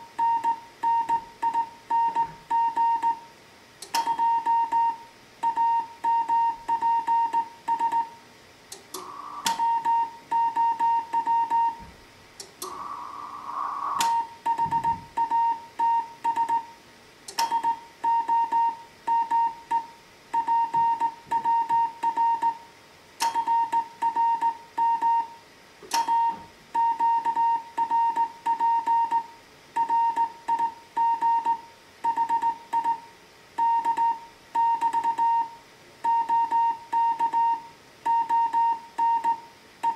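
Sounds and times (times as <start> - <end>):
morse code tone: 9.0 - 11.8, 12.6 - 16.7
sharp clicks: 12.4 - 14.2.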